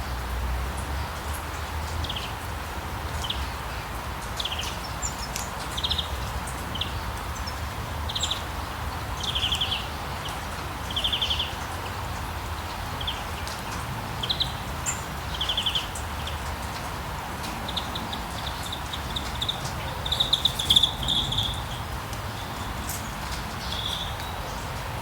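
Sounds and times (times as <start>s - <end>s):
steady rain hiss: 0.0s - 25.0s
sharp drip ticks: 9.2s - 25.0s
songbird trilling: 17.7s - 21.8s.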